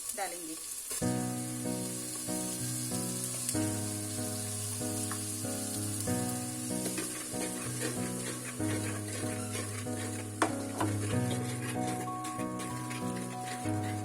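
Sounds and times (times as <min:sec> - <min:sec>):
spices sizzling in hot oil: 0:00.0 - 0:14.0
instrumental background music: 0:01.0 - 0:14.0.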